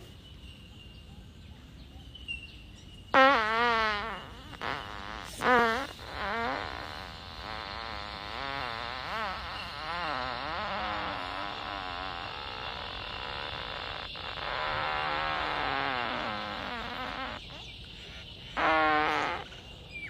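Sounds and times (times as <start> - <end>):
long wavering fart: 3.1 - 17.6, 18.6 - 19.6.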